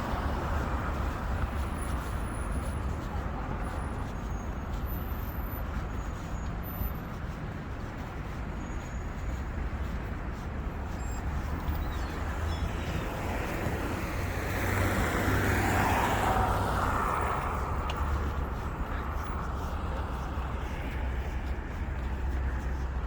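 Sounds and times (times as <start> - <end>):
city road traffic: 0.0 - 23.0
car passing close by: 13.1 - 18.1.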